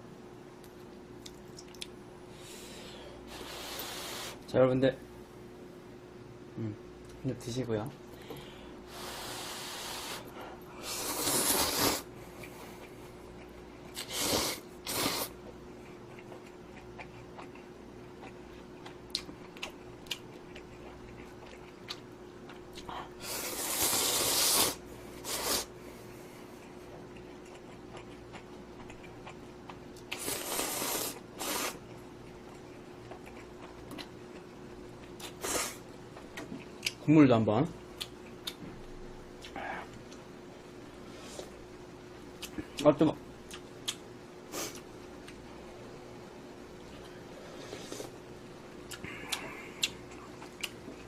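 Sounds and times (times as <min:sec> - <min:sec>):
faint steady hum: 0:00.0 - 0:51.0
person slurping noodles: 0:10.8 - 0:12.1, 0:14.0 - 0:15.3, 0:23.2 - 0:25.7, 0:30.2 - 0:31.8
chewing: 0:15.8 - 0:23.0, 0:26.6 - 0:30.9, 0:31.8 - 0:37.0, 0:48.9 - 0:51.0.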